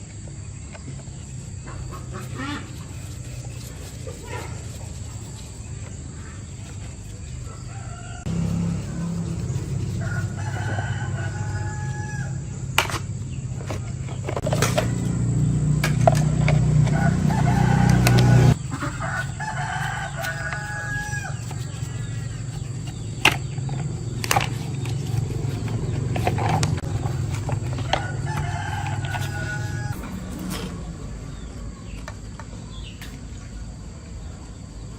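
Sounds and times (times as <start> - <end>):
low machine hum: 0.0 - 34.9
rooster crowing: 7.3 - 12.6, 16.5 - 22.7, 24.5 - 32.1.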